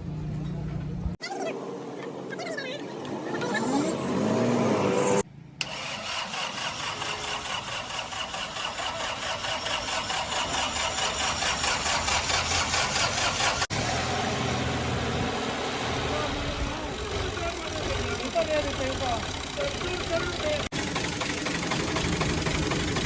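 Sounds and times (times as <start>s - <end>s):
diesel tractor engine running: 5.6s - 23.0s.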